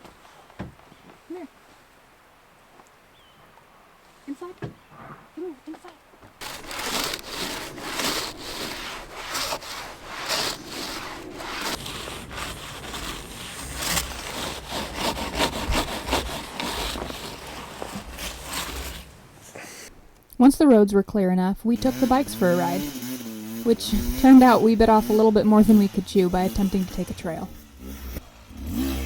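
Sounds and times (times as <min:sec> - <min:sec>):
rasping scraping strokes: 0:06.4 - 0:20.0, 0:21.7 - 0:29.0.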